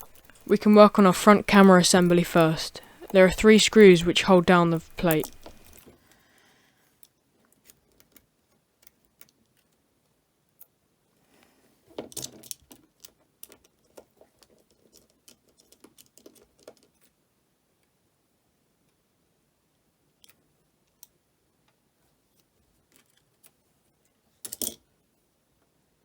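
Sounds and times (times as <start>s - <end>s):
small metal tools clicking and tapping: 0.0s - 5.9s, 24.5s - 24.8s.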